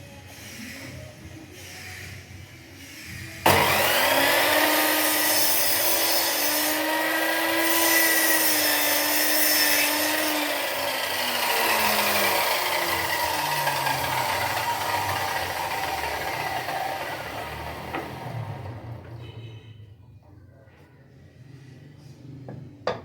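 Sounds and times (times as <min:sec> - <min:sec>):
electric power tool working wood: 0:03.5 - 0:19.0.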